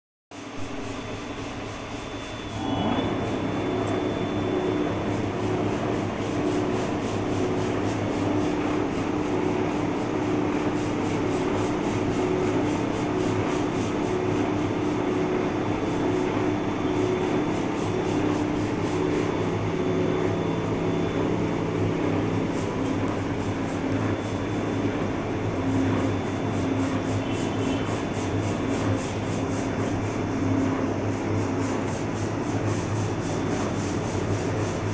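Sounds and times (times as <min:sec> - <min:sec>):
gear whine: 0:02.1 - 0:05.2.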